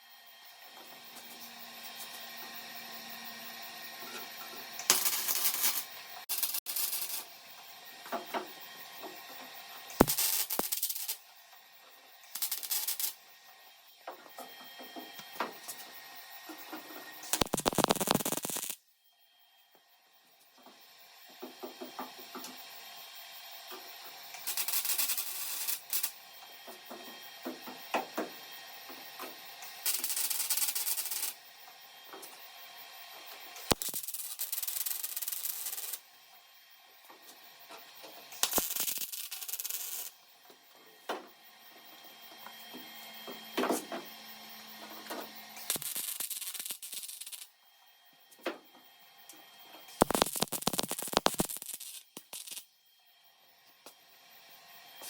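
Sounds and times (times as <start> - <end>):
welding arc crackling: 4.8 - 7.3, 10.0 - 11.2, 12.3 - 13.2, 17.2 - 18.8, 24.4 - 26.2, 29.8 - 31.4, 33.6 - 36.0, 38.3 - 40.2, 45.6 - 47.5, 50.0 - 52.7.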